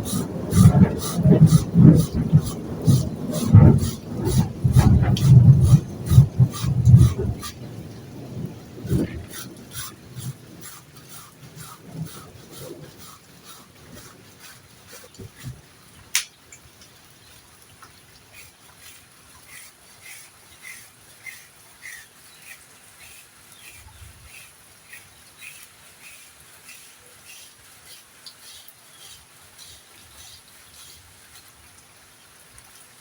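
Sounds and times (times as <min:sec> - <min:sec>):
sharp click: 0:16.1 - 0:16.4.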